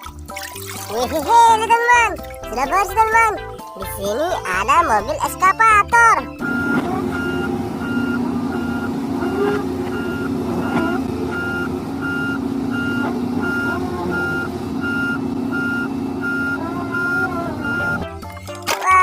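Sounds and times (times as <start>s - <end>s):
engine drone: 0.0s - 19.0s
reversing alarm beeping: 6.2s - 18.5s.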